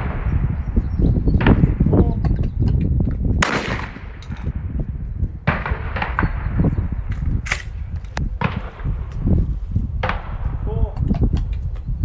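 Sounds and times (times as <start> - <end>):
low rumble: 0.0 - 12.0
shotgun shots: 3.4 - 4.6, 5.4 - 6.6, 8.4 - 8.9.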